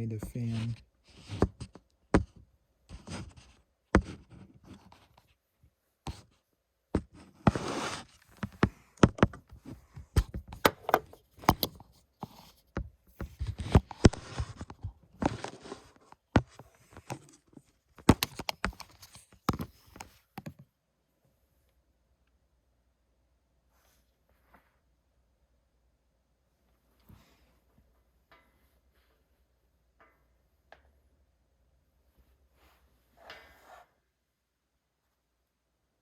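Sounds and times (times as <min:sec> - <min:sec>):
short scraping noises: 0:07.4 - 0:08.2.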